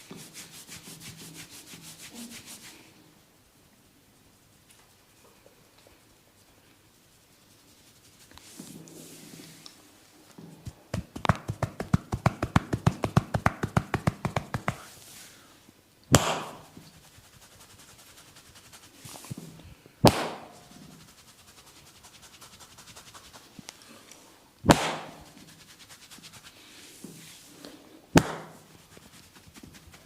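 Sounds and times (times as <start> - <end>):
hair rubbing: 7.0 - 9.7, 10.6 - 15.4, 16.4 - 19.4, 20.4 - 23.6, 25.2 - 27.6, 28.4 - 30.0
hands tapping on a head: 10.6 - 14.9
loud smacks with echo: 16.1 - 16.7, 20.0 - 20.6, 24.6 - 25.3, 28.2 - 28.6.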